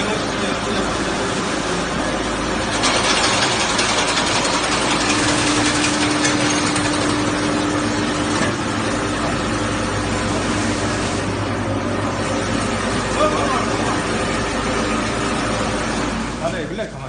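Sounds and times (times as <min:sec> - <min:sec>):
fish-processing machine running: 0:00.0 - 0:17.0.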